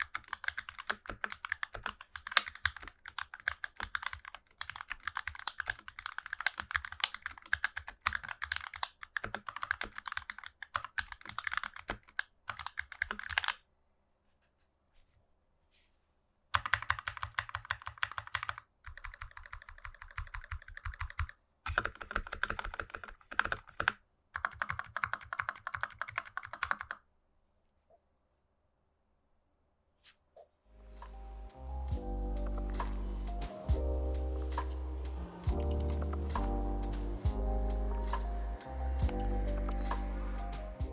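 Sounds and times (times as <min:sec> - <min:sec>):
fast typing on mechanical keyboard: 0:00.0 - 0:13.6, 0:16.6 - 0:27.0, 0:35.4 - 0:38.3.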